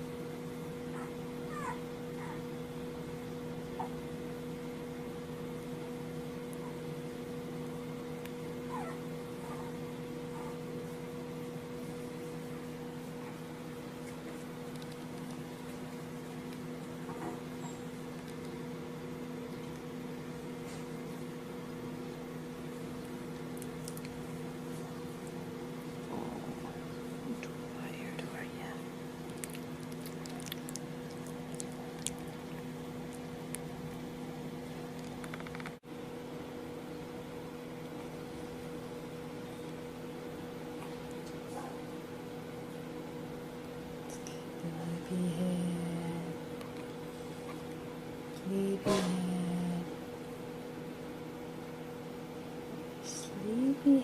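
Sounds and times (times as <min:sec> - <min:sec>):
low electrical hum: 0:00.0 - 0:54.0
faint clicks and ticks: 0:34.9 - 0:35.8.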